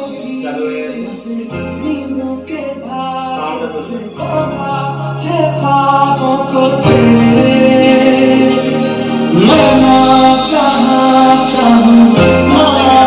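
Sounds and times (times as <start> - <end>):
man singing song through speakers: 0.0 - 13.0
sustained bass notes: 1.0 - 13.0.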